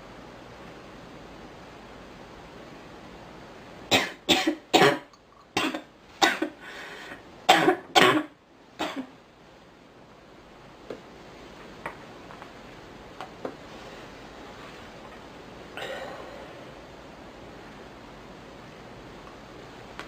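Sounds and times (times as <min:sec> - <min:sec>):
girl coughing: 0:03.9 - 0:06.6, 0:07.5 - 0:09.1.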